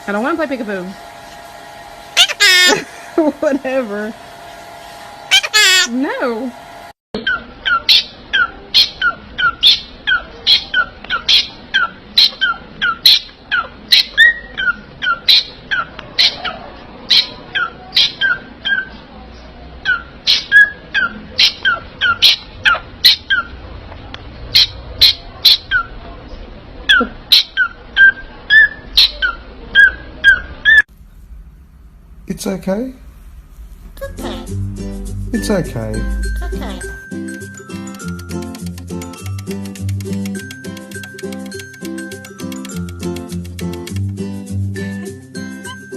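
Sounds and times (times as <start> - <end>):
parrot squawking: 2.2 - 2.8, 5.3 - 6.0, 7.2 - 19.0, 19.8 - 23.6, 24.5 - 26.0, 26.9 - 30.8, 34.0 - 34.6.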